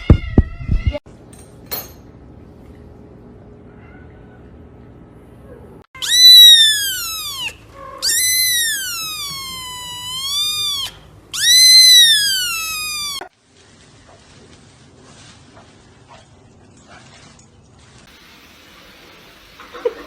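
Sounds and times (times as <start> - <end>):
cat meowing loudly: 6.0 - 13.3.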